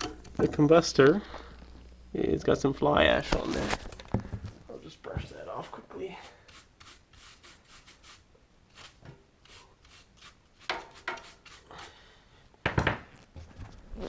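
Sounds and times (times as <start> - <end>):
brush strokes: 5.4 - 12.0.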